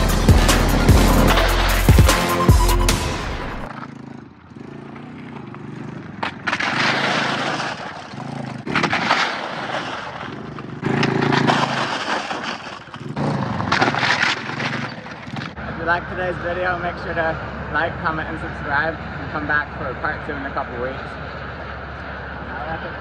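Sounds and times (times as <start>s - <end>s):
rough rushing noise: 0.0s - 3.8s, 6.3s - 20.4s
small four-wheeler engine running: 3.2s - 23.0s.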